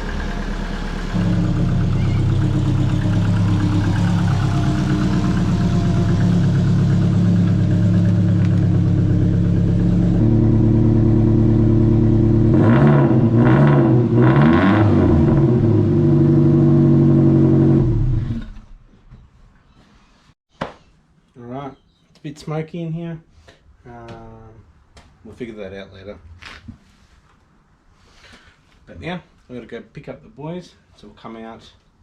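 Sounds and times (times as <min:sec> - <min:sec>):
car engine idling and revving: 0:00.0 - 0:18.6.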